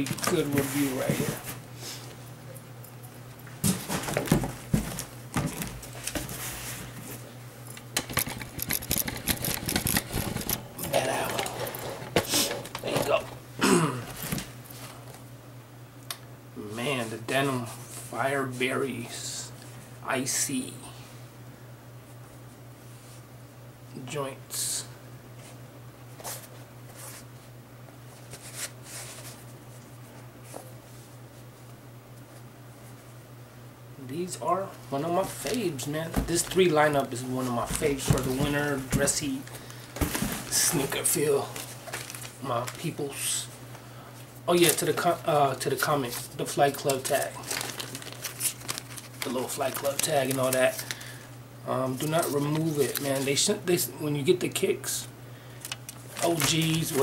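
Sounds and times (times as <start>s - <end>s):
rustling handling noises: 0.0s - 13.4s, 25.4s - 33.2s, 34.3s - 53.9s, 55.6s - 57.0s
steady low hum: 0.0s - 57.0s
box handling taps and rustles: 37.6s - 39.4s.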